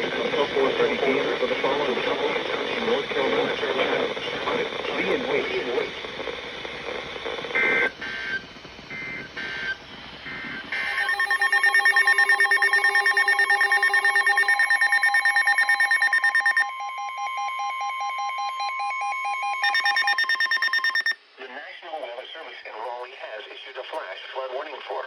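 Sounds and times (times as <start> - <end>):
chirping digital data bursts: 9.0 - 21.2
pulsing alert tone: 10.8 - 21.2.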